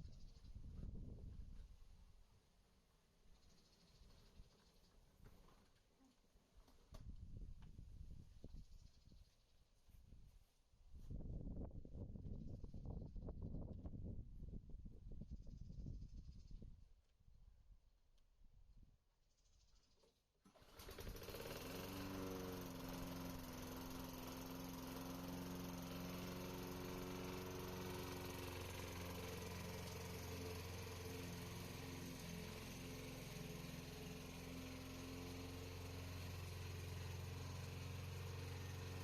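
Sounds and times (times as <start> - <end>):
small lawn mower engine starting: 20.4 - 39.0.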